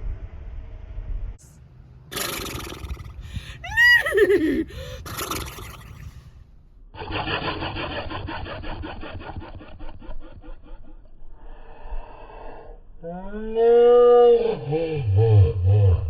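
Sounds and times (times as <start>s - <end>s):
breathy hiss: 2.2s - 6.4s.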